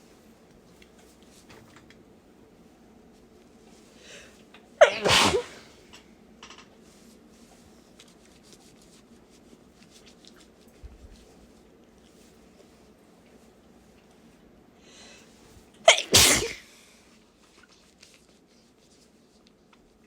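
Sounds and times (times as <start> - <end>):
faint in-breath: 3.9 - 4.4, 14.8 - 15.4
person sneezing: 4.8 - 5.8, 15.9 - 16.8.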